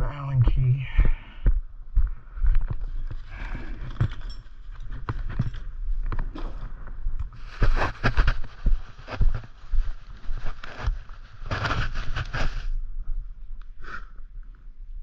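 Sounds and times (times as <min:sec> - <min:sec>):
rustling: 0:02.8 - 0:12.8.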